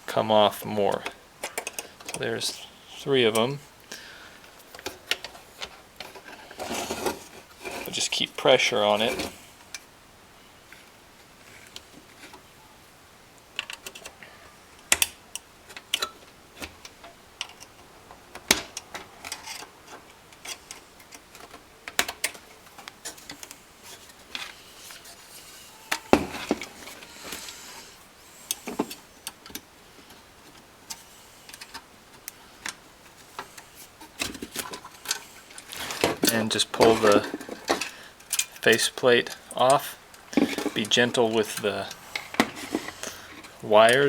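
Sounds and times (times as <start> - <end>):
plastic clips clicking and snapping: 0.9 - 2.3.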